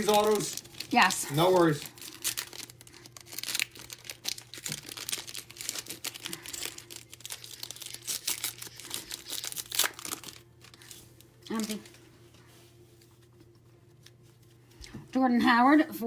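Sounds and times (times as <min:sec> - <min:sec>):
card pack wrappers crinkling: 0:00.0 - 0:12.0
faint steady hum: 0:00.0 - 0:16.0.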